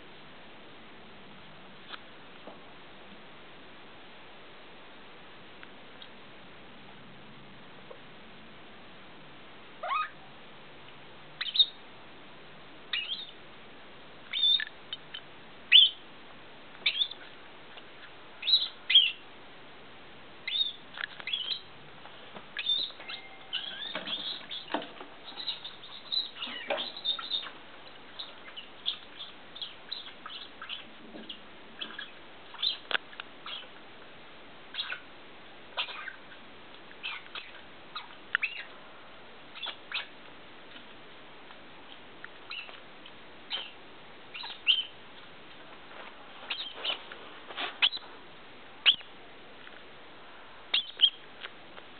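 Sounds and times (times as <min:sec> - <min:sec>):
squirrel squeaking: 0:09.8 - 0:10.2, 0:11.4 - 0:11.8, 0:12.9 - 0:13.4, 0:14.3 - 0:15.1, 0:15.7 - 0:16.0, 0:16.8 - 0:17.3, 0:18.0 - 0:19.2, 0:20.4 - 0:21.7, 0:22.6 - 0:33.8, 0:34.7 - 0:35.1, 0:35.7 - 0:38.7, 0:39.5 - 0:40.2, 0:42.5 - 0:42.8, 0:43.5 - 0:45.3, 0:46.5 - 0:47.0, 0:47.8 - 0:48.1, 0:48.8 - 0:49.1, 0:50.7 - 0:51.2.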